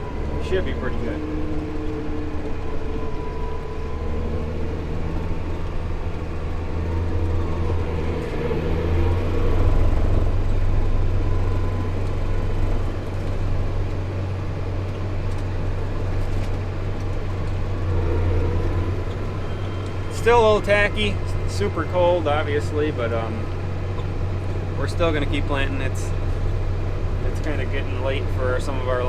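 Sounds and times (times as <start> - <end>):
tractor engine droning: 0.0 - 29.0.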